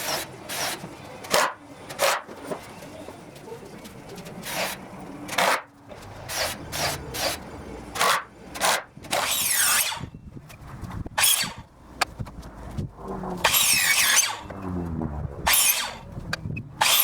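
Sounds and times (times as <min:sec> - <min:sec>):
squealing rubbing scrapes: 0:12.5 - 0:17.0.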